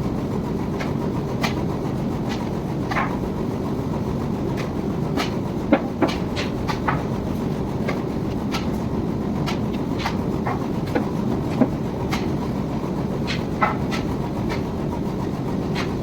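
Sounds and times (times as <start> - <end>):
machine low rumble: 0.0 - 16.0.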